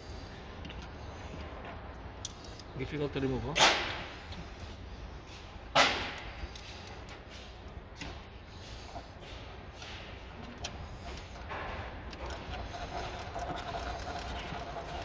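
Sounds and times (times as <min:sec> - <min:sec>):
hand tools clicking and tapping: 0:09.2 - 0:15.0.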